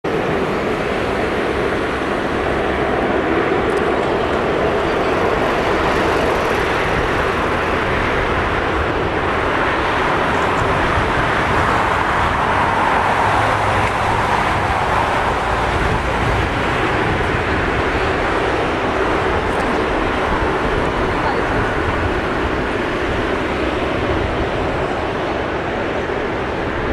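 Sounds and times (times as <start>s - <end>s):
turboprop engines at takeoff power: 0.0s - 26.9s.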